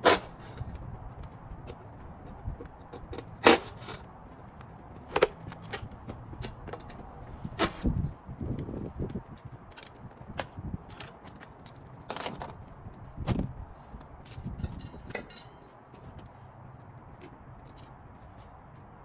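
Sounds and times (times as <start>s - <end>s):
hand tools and fasteners clinking: 0.0s - 4.1s, 14.2s - 16.2s.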